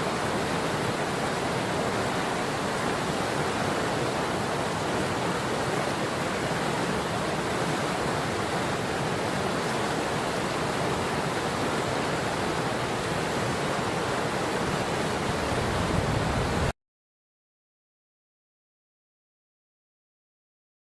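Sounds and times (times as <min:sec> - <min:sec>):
river water rushing: 0:00.0 - 0:16.7.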